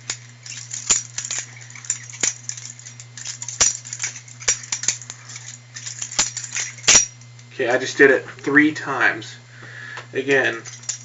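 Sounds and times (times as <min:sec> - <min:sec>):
knife handles clicking and rattling: 0:00.0 - 0:07.5, 0:10.4 - 0:11.0.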